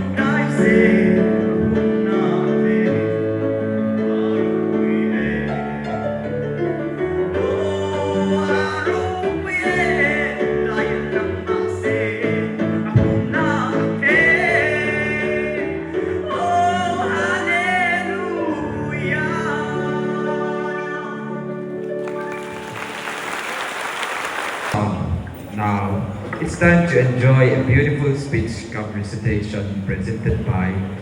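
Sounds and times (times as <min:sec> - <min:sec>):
person singing: 0:00.0 - 0:06.4, 0:07.2 - 0:22.6
applause: 0:21.9 - 0:24.8.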